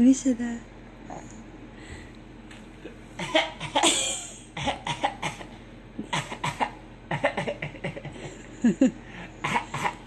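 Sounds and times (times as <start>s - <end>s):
small child coughing: 3.2s - 8.1s, 9.4s - 10.0s.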